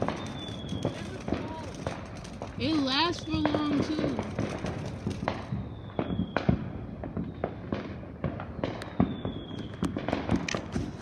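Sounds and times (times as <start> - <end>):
firework crackling and popping: 0.0 - 11.0.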